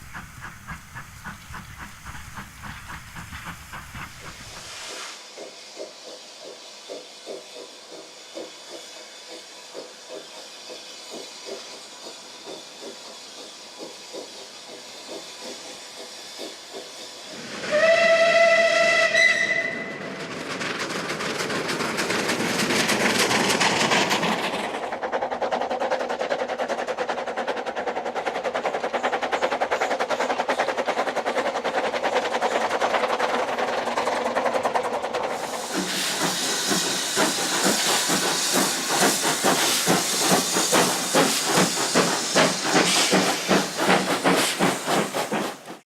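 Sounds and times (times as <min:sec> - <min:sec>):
steam hissing: 0:00.0 - 0:45.9
steam locomotive exhaust beats: 0:00.0 - 0:45.9
steam whistle: 0:17.3 - 0:20.1.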